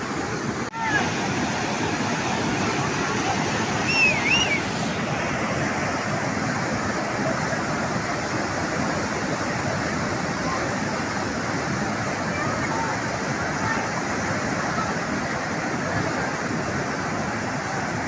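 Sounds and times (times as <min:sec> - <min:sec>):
floodwater rushing: 0:00.0 - 0:18.0
high wavering call: 0:03.8 - 0:04.7.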